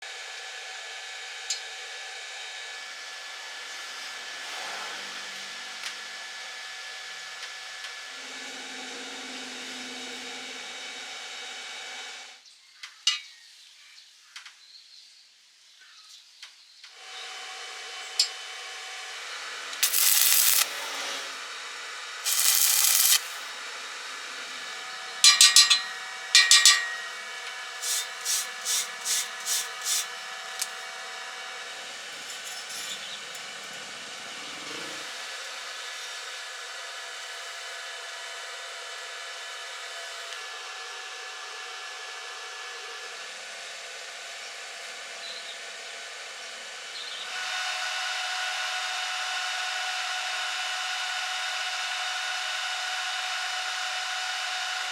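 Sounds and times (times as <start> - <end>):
machine hum: 8.2 - 12.1, 19.8 - 21.4, 22.2 - 34.4
short hissing bursts: 19.8 - 21.3, 22.2 - 23.6, 27.8 - 30.8.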